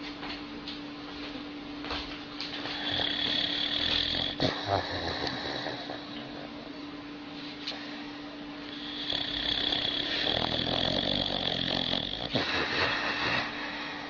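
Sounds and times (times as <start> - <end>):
steady background hum: 0.0 - 14.0
dog snoring: 2.5 - 6.7, 8.6 - 14.0.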